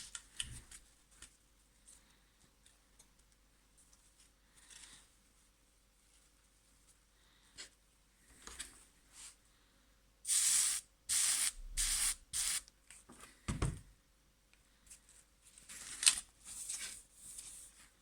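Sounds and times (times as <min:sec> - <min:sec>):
spray bottle squirting: 0:10.3 - 0:12.6.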